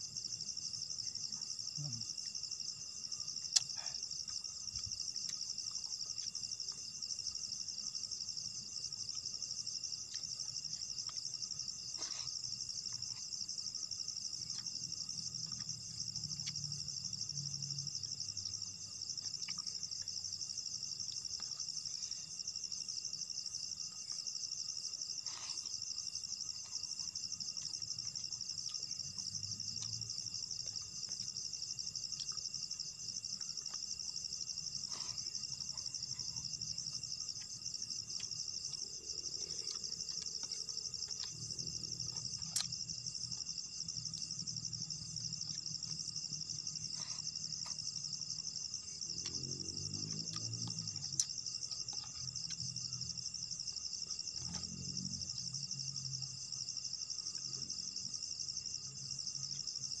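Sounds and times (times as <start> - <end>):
insects chirring: 0.0 - 60.0.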